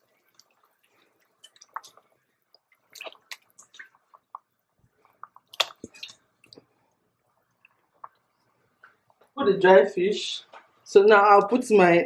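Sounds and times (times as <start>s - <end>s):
wet squelches and drips: 0.0s - 9.4s.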